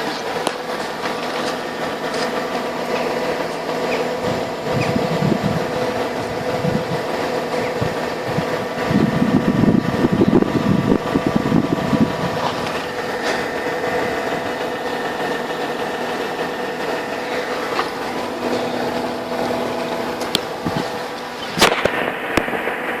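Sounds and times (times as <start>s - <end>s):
car engine idling with knock: 0.0s - 23.0s
sharp click: 21.4s - 22.6s.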